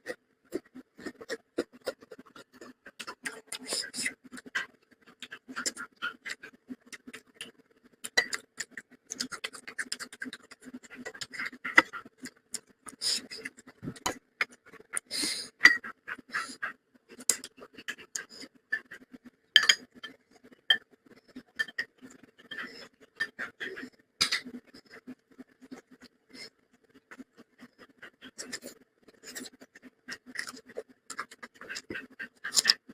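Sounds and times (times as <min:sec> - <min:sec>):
sharp eating clicks: 0:00.0 - 0:26.2, 0:26.8 - 0:32.9
wet chewing and lip smacks: 0:00.5 - 0:15.1
food crunching: 0:26.9 - 0:32.9.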